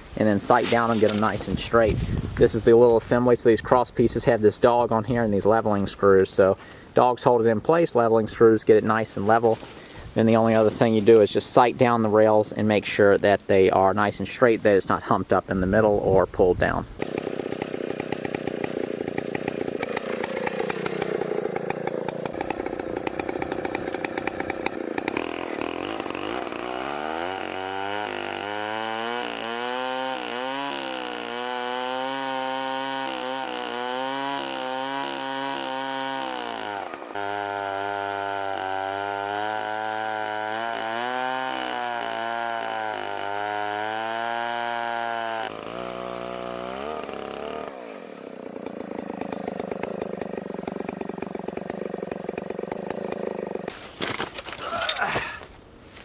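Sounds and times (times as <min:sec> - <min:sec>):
chainsaw engine revving: 0:00.2 - 0:02.5, 0:16.9 - 0:55.5.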